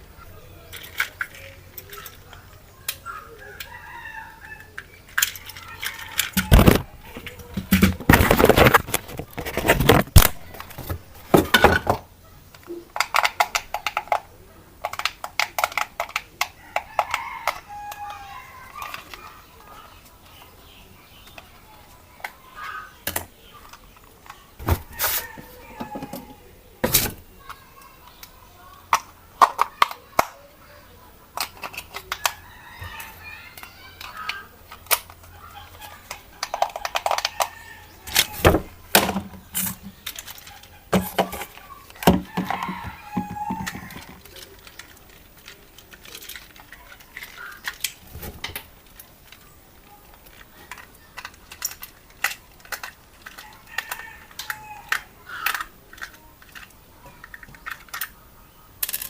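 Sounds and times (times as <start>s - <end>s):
packaging rustling: 5.2s - 11.9s, 38.1s - 56.7s
toy handling knocks: 5.2s - 14.2s, 38.1s - 48.7s.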